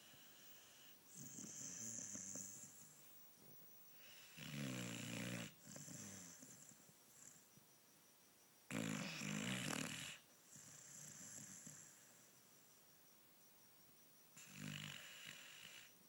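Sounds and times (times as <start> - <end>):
dog snoring: 0.0 - 3.0, 4.0 - 7.5, 8.7 - 12.3, 14.4 - 16.0.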